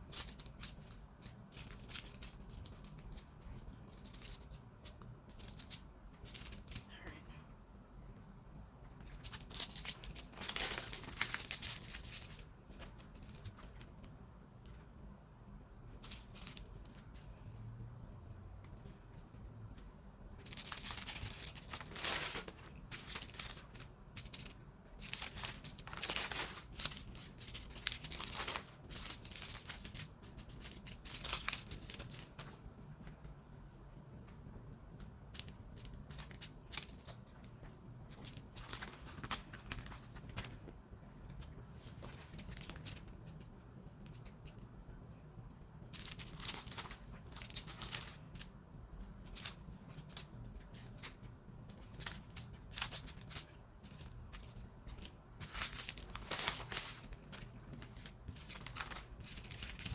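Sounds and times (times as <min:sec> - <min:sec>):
plastic bags crinkling: 0:09.2 - 0:12.5, 0:20.5 - 0:32.3, 0:46.0 - 0:48.3, 0:51.9 - 0:59.9.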